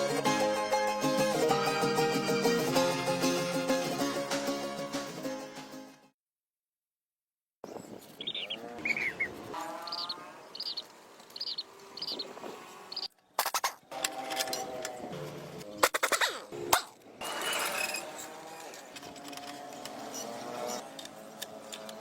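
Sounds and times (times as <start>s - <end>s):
birds chirping: 7.6s - 13.4s
clicks and scrapes: 13.4s - 22.0s.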